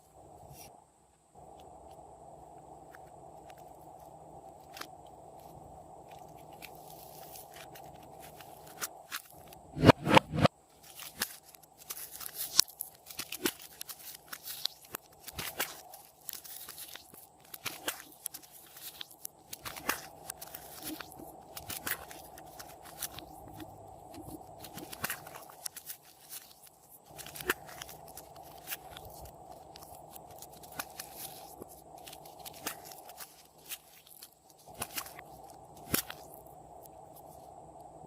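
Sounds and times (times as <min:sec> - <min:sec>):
slime popping and crackling: 0:10.3 - 0:36.5.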